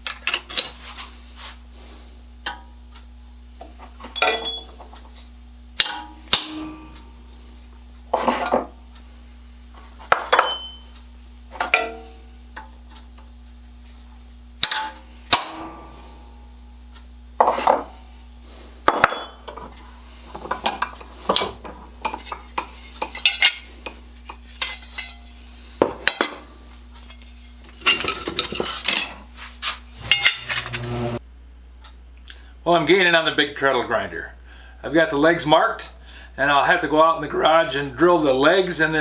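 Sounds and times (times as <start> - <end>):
steady low hum: 0.0 - 39.0
metal tools clinking: 4.2 - 4.9, 10.3 - 11.0, 18.9 - 19.9, 20.5 - 25.4, 26.1 - 29.2, 30.0 - 30.9.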